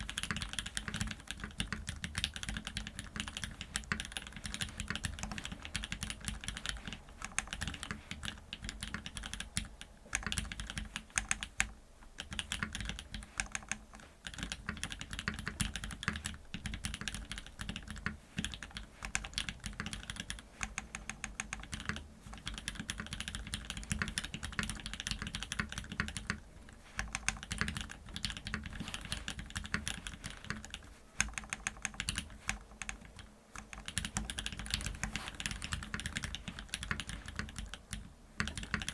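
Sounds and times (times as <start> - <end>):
fast mechanical keyboard typing: 0.0 - 38.9.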